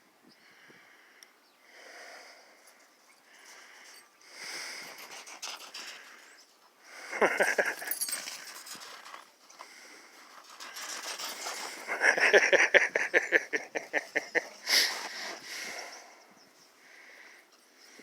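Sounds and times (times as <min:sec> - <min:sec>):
animal breathing hard: 0:13.9 - 0:16.2.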